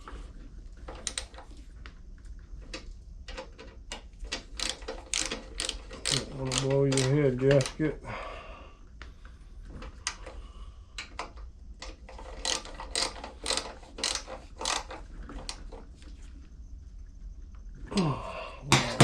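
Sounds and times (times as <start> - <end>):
ratchet wrench clicking: 1.0 - 1.3, 4.4 - 7.8, 11.8 - 15.6.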